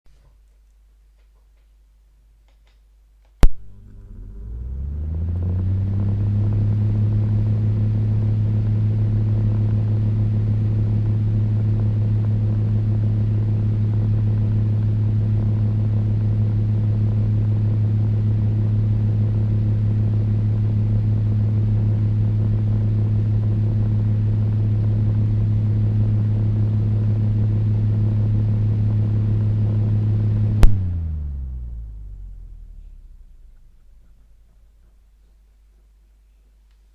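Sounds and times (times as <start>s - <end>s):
fan switch click: 3.4s - 4.0s, 30.6s - 30.8s
electric fan motor humming: 3.4s - 34.8s.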